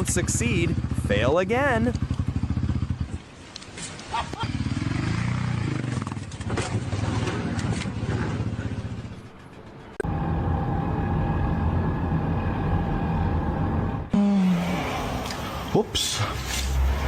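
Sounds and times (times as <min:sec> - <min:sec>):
engine drone with whine: 0:04.6 - 0:17.0
engine running: 0:05.9 - 0:15.8.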